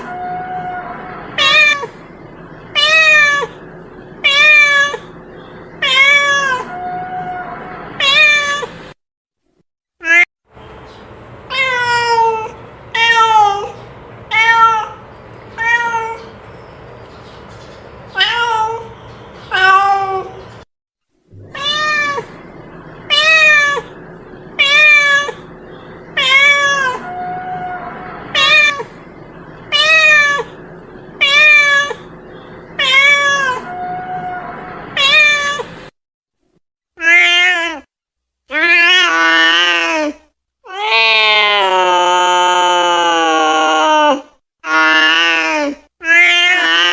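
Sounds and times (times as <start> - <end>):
cat meowing: 0.0 - 2.0, 2.8 - 3.6, 4.2 - 5.1, 5.8 - 8.7, 11.5 - 15.0, 15.6 - 16.3, 18.2 - 18.9, 21.4 - 22.4, 23.1 - 23.9, 24.6 - 25.5, 26.2 - 29.0, 29.7 - 30.6, 31.2 - 32.1, 32.8 - 35.7, 46.0 - 46.9.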